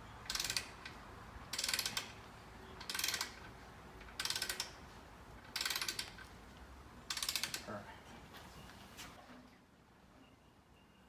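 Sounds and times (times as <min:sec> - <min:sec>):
ratchet wrench clicking: 0:00.2 - 0:02.2, 0:02.8 - 0:04.8, 0:05.4 - 0:06.3, 0:07.1 - 0:07.7.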